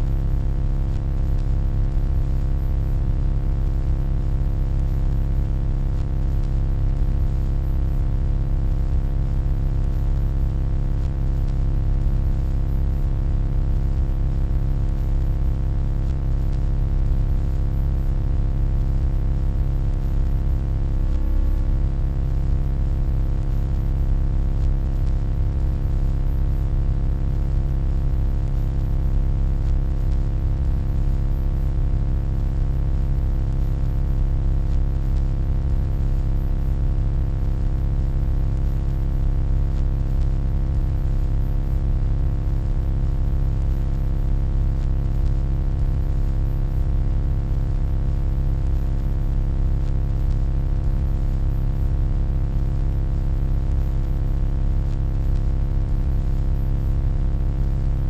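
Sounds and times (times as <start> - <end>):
deep electronic drone: 20.9 - 21.9
faint steady tones: 20.9 - 21.9.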